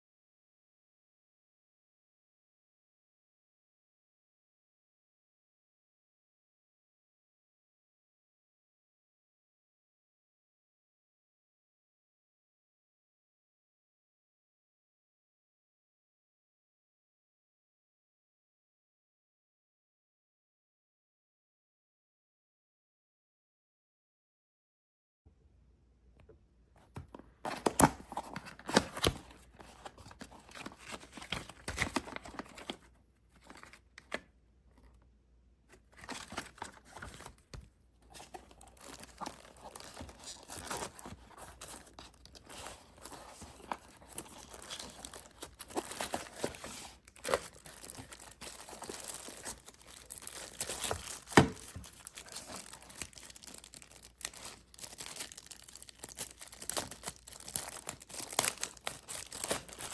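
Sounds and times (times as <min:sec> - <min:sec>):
crinkling and tearing: 0:38.1 - 0:59.9.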